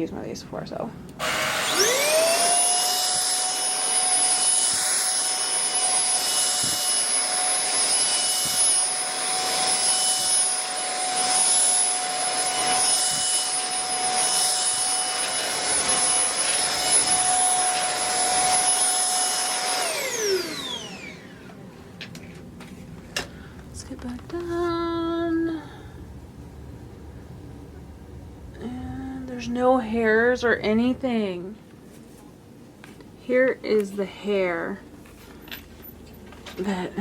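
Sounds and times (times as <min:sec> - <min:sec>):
stick vacuum motor whine: 0:01.2 - 0:21.6.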